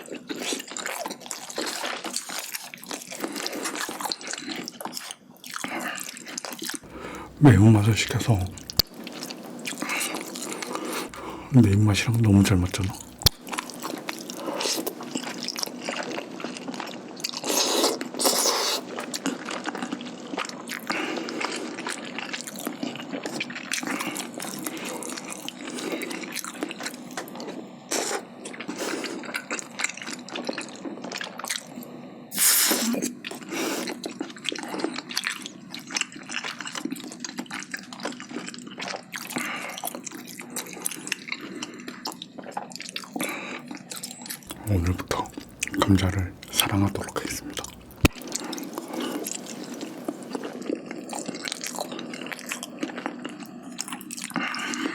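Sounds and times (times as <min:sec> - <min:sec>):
wet chewing and mouth sounds: 0:06.9 - 0:15.5, 0:44.5 - 0:50.5.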